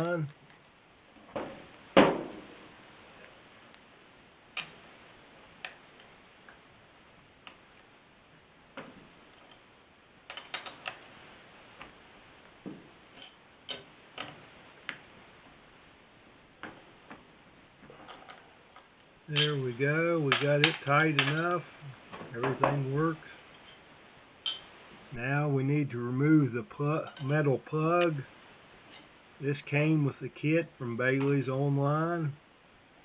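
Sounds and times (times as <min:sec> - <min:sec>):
hand tools clicking and knocking: 0:20.3 - 0:21.5.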